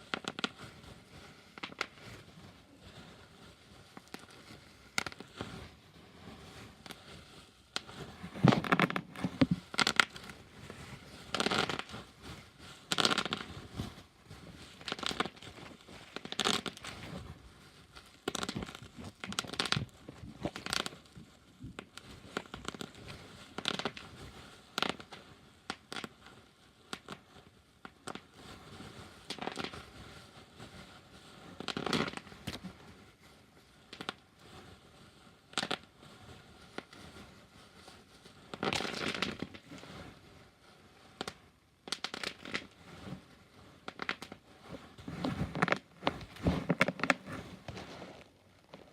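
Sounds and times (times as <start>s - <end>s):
plastic sheet crinkling: 0.0s - 26.3s, 29.3s - 34.6s, 36.7s - 40.2s, 41.2s - 48.9s
bubble wrap popping: 0.0s - 28.4s, 29.2s - 29.9s, 31.6s - 34.4s, 35.3s - 36.0s, 36.7s - 37.8s, 38.4s - 40.0s, 41.1s - 48.9s.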